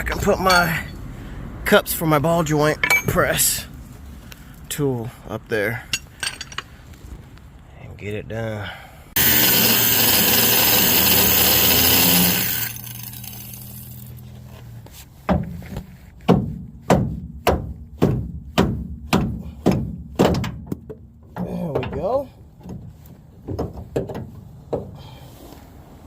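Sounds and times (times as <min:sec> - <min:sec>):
power cutting tool cutting metal: 0:09.2 - 0:14.0
sharp knocks: 0:15.3 - 0:25.0.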